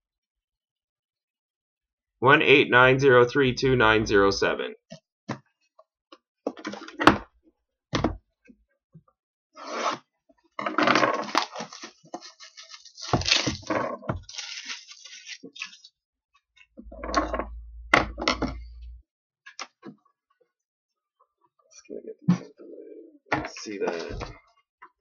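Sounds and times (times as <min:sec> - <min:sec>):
plastic wrap tearing and crinkling: 0:11.2 - 0:15.9.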